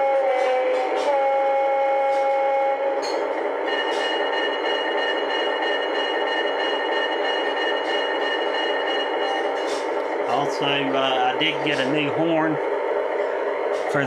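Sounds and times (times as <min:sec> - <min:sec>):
two-tone diesel horn: 0:00.0 - 0:03.3
steady high whine: 0:00.0 - 0:14.0
diesel engine running: 0:02.5 - 0:14.0.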